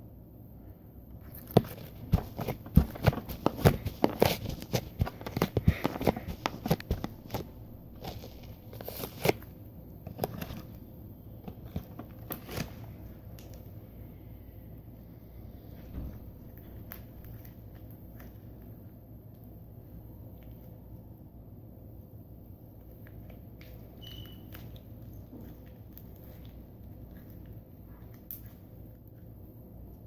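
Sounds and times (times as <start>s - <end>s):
slime squishing and popping: 1.2s - 9.5s.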